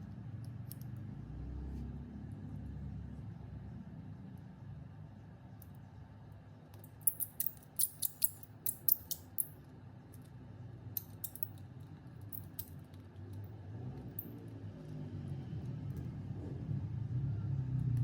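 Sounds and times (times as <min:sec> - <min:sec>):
low steady hum: 0:02.4 - 0:13.5.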